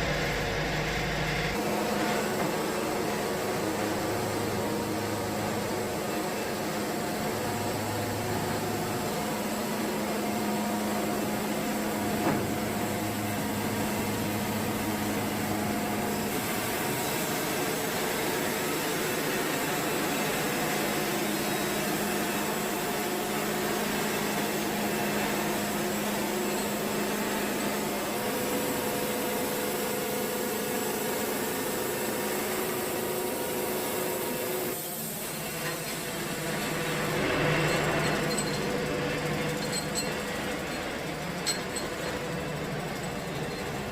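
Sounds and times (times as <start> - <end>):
sawmill engine humming: 0.0 - 43.9.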